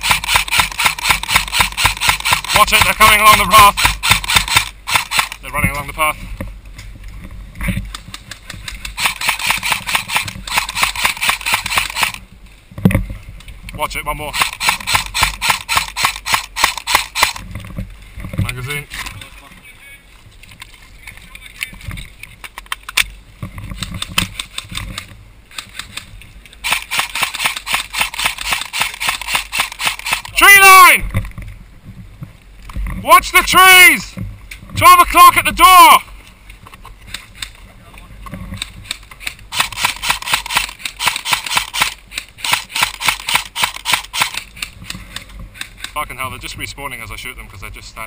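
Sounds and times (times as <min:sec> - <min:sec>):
airsoft guns firing: 0:00.0 - 0:05.4, 0:08.8 - 0:12.2, 0:14.3 - 0:17.4, 0:26.6 - 0:30.6, 0:39.2 - 0:44.5
rustling hiss: 0:00.0 - 0:30.4, 0:36.0 - 0:48.0.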